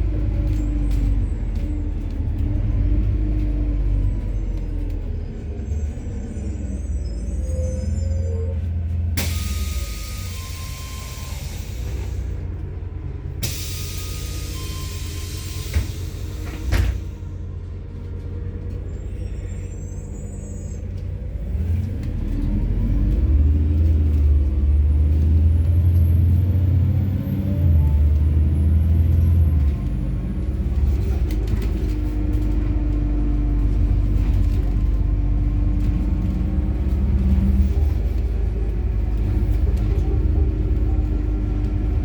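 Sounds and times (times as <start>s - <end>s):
bus engine rumble: 0.0s - 42.0s.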